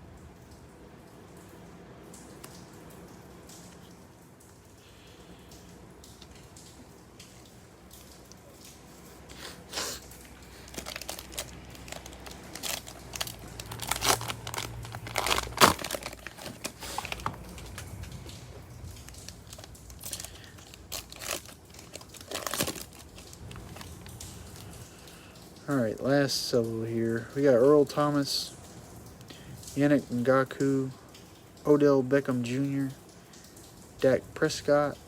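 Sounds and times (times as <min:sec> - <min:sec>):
cellophane wrapper crinkling: 0:09.8 - 0:24.8.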